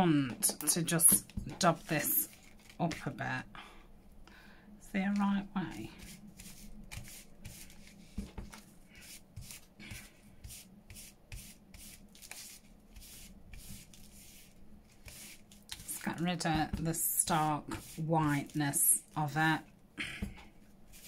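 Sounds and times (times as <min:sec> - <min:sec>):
ink applicator scuffing strokes: 0:05.1 - 0:19.4, 0:20.4 - 0:21.0.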